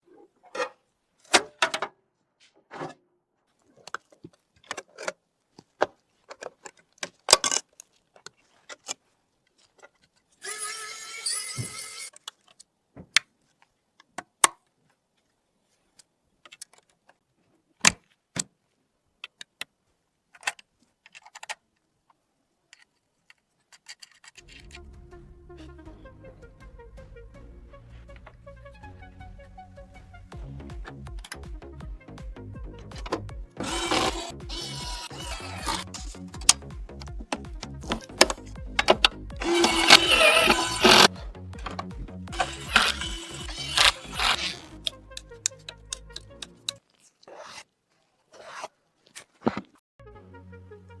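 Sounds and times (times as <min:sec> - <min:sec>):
rough rasp: 0:10.4 - 0:12.1, 0:33.0 - 0:36.6, 0:37.8 - 0:44.9, 0:47.1 - 0:49.7
computer parts clicking and clacking: 0:32.8 - 0:46.8.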